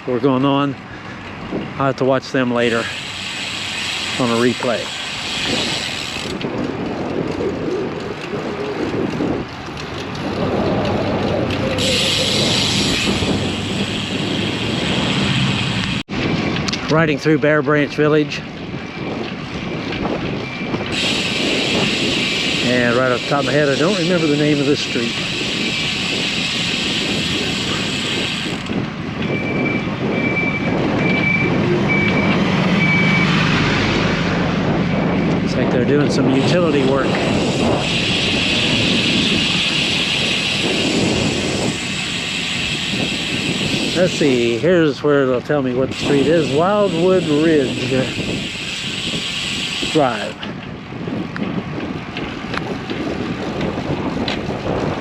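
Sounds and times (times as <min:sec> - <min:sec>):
wind buffeting microphone: 0:00.0 - 0:55.0
reversing alarm beeping: 0:20.4 - 0:20.8, 0:29.3 - 0:33.4, 0:34.9 - 0:35.4
truck engine running low: 0:24.6 - 0:44.9.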